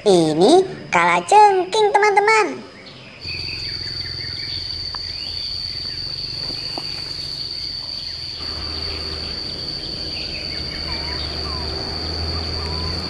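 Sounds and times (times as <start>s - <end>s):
high-pitched insect trill: 3.1s - 13.0s.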